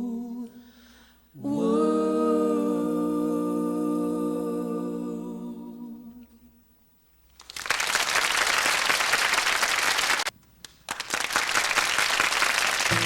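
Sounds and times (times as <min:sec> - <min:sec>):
audience applause: 0:07.4 - 0:13.0.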